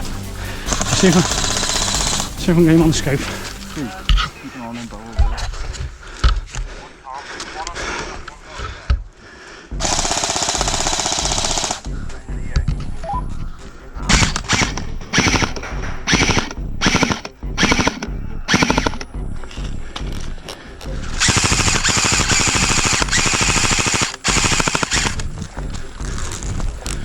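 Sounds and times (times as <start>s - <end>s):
airsoft gun automatic fire: 0.7s - 2.6s, 9.8s - 11.9s, 14.1s - 19.0s, 21.2s - 25.3s.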